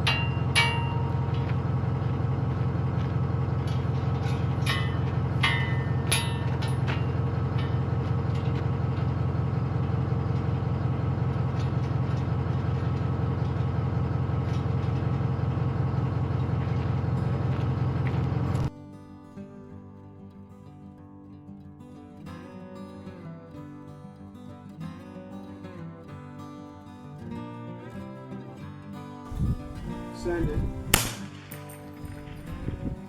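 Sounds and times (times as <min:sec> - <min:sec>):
vehicle engine rumble: 0:00.0 - 0:18.7, 0:29.3 - 0:33.0
sharp clicks: 0:30.9 - 0:31.9.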